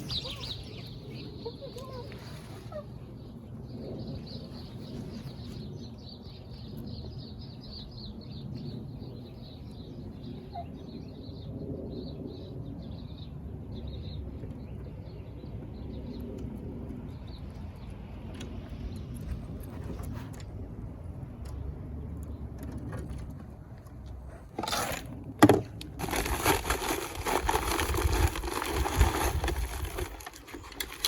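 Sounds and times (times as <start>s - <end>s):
small birds chirping: 0.0s - 20.1s.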